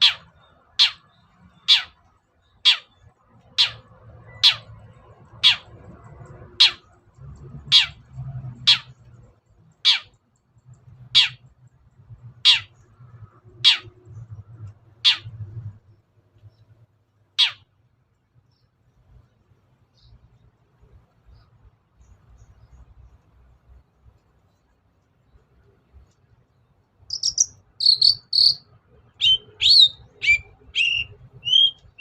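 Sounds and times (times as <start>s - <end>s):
bird harsh call notes: 0.0s - 4.7s, 9.8s - 10.2s, 11.1s - 11.4s, 12.4s - 12.8s, 13.6s - 13.9s, 17.4s - 17.7s, 27.1s - 32.0s.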